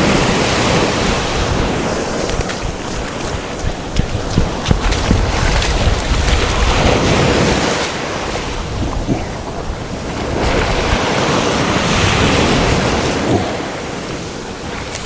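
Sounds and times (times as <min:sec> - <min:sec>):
surf breaking on beach: 0:00.0 - 0:15.0
wind buffeting microphone: 0:00.0 - 0:15.0.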